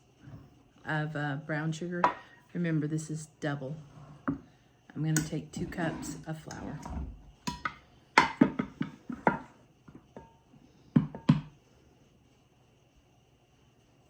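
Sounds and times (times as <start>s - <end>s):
utensils knocking against bowl: 11.0s - 11.5s.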